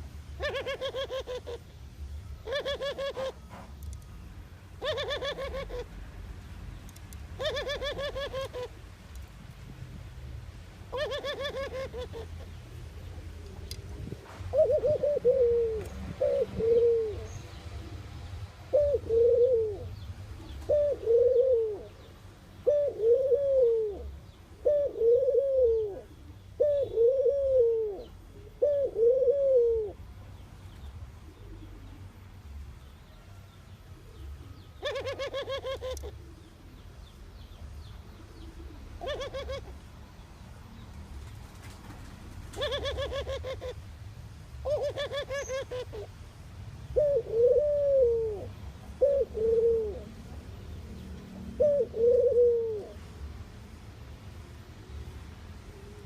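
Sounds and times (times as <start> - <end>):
dove cooing: 0.0 - 1.8, 2.4 - 3.7, 4.8 - 6.0, 7.4 - 8.8, 10.9 - 12.6, 13.4 - 30.1, 31.2 - 32.2, 34.0 - 36.9, 38.2 - 39.8, 42.4 - 43.9, 44.6 - 46.2, 46.9 - 50.4, 51.4 - 53.2
harsh pulsed bird calls: 44.6 - 46.1.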